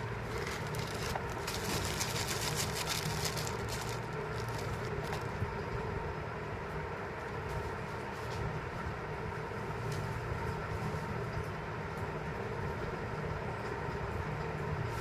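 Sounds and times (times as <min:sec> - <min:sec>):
packaging crinkling and rustling: 0:00.0 - 0:05.6.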